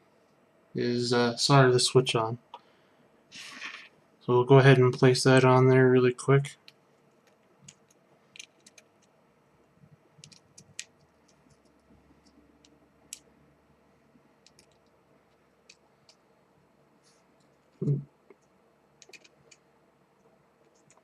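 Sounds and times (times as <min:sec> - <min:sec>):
low voice: 0:00.8 - 0:02.4, 0:03.4 - 0:06.5, 0:17.8 - 0:18.0
small clicks and taps: 0:06.6 - 0:09.2, 0:10.2 - 0:13.3, 0:14.4 - 0:16.2, 0:17.4 - 0:19.6.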